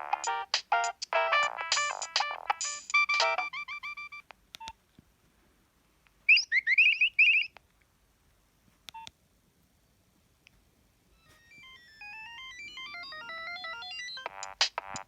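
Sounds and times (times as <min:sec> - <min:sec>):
electronic ringtone tune: 0:00.0 - 0:04.2, 0:11.2 - 0:15.0.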